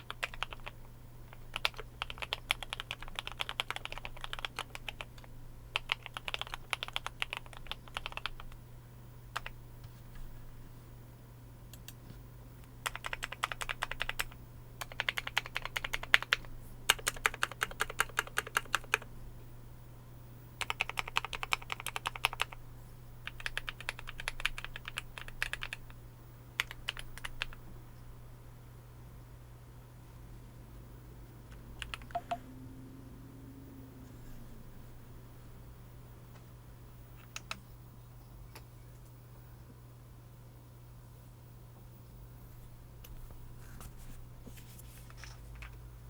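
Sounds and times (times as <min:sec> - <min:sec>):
typing on a mechanical keyboard: 0:00.0 - 0:08.6, 0:09.3 - 0:09.6, 0:12.8 - 0:19.1, 0:20.6 - 0:22.6, 0:23.2 - 0:25.9, 0:26.6 - 0:27.6, 0:31.8 - 0:32.4, 0:37.2 - 0:37.6.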